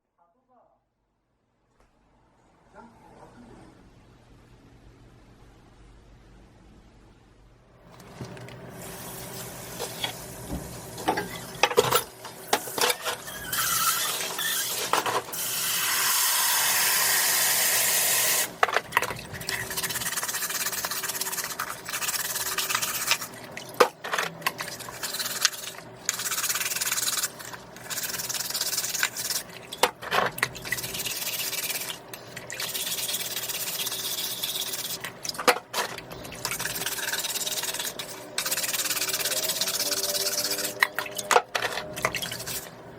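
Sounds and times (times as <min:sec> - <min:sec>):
wet rubbing and scraping: 0:18.8 - 0:42.8.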